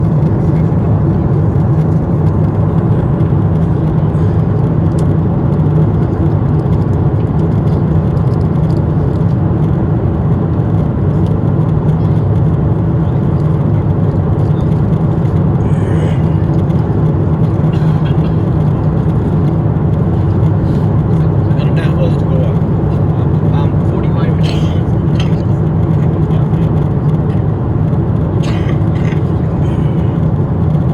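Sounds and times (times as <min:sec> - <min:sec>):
airplane cabin rumble: 0:00.0 - 0:30.9.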